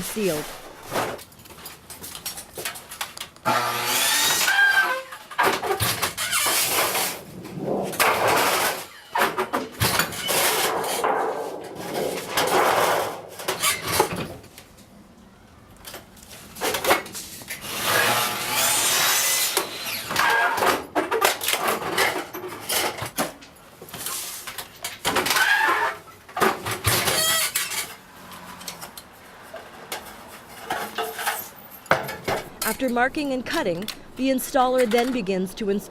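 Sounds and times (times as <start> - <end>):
metal sheet scraping and cutting: 6.2 - 9.4.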